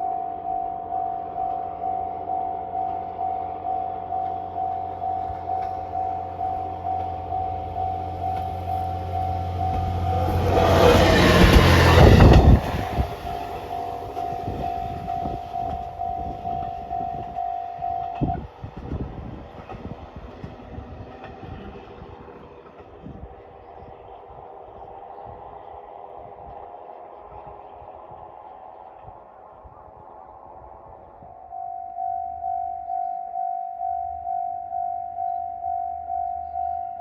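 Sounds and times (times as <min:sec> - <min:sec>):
crossing warning bell ringing: 0:00.0 - 0:18.7, 0:31.4 - 0:37.0
diesel train passing: 0:00.0 - 0:33.4
wheels clicking over rail joints: 0:03.9 - 0:25.1.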